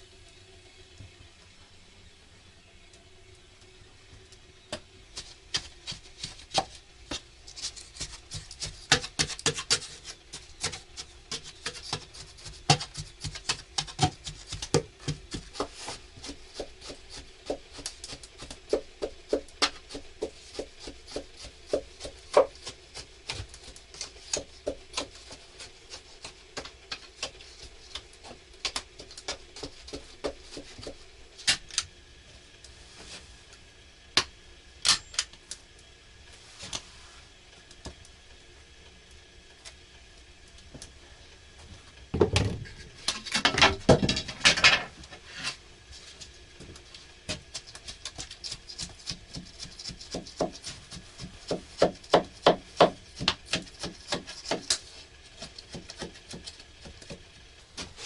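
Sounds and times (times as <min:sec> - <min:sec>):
hands clicking and tapping objects: 0:04.7 - 0:31.6.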